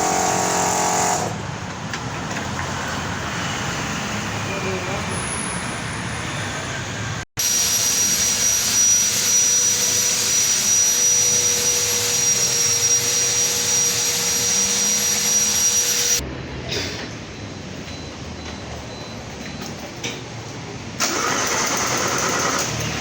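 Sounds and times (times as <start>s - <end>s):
high whistle: 7.4s - 16.2s.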